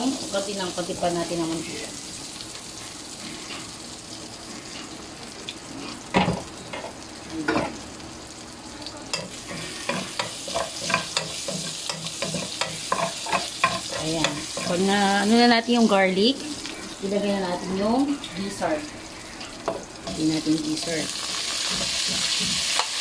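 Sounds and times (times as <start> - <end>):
garlic sizzling in oil: 0.0 - 23.0
utensil scraping pan: 9.2 - 15.1, 19.4 - 23.0.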